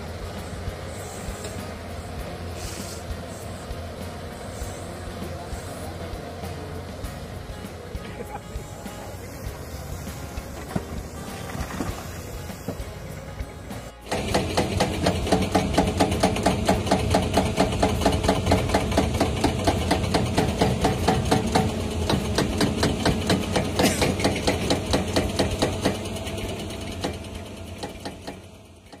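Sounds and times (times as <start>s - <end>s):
diesel engine running: 0.0s - 29.0s
hydraulic rock breaker hammering rock: 8.8s - 29.0s.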